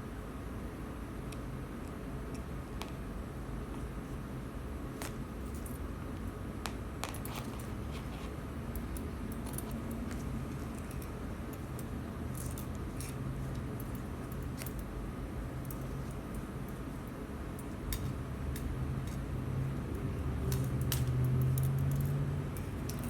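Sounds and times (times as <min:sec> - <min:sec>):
steady low hum: 0:00.0 - 0:23.0
light metallic clicks and clinks: 0:05.0 - 0:05.9, 0:08.7 - 0:19.2, 0:19.9 - 0:23.0.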